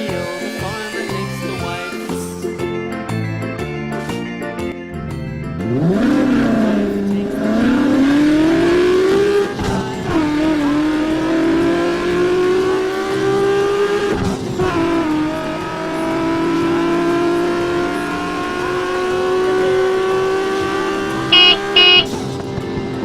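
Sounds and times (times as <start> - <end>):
car engine accelerating: 4.9 - 23.0.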